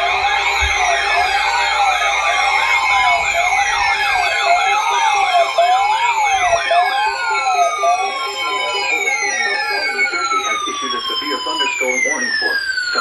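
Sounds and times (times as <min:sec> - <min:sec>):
falling tone sweeps: 0:00.0 - 0:06.5
rising and falling siren wail: 0:00.0 - 0:13.0
warbling siren yelp: 0:00.0 - 0:13.0.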